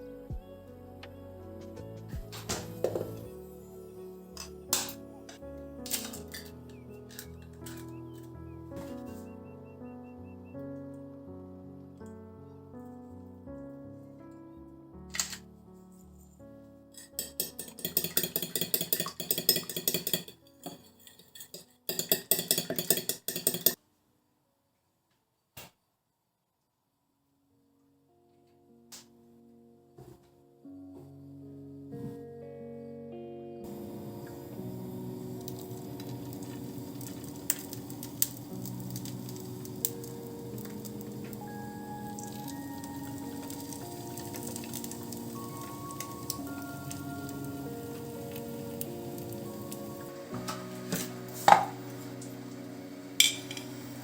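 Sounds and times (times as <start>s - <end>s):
soft background music: 0.0s - 23.0s, 27.6s - 54.0s
utensil clinking against dish: 17.0s - 23.8s, 53.2s - 53.7s
steady hiss: 33.7s - 54.0s.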